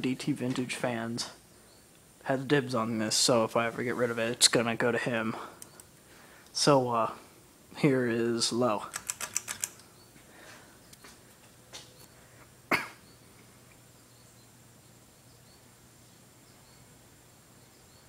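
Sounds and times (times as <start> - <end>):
ceiling fan motor hum: 0.0 - 18.0
clicks: 8.8 - 9.9.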